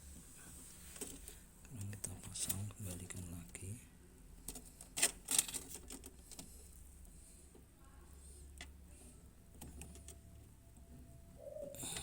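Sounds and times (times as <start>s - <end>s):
low steady hum: 0.0s - 12.0s
plastic parts clicking: 4.4s - 6.5s.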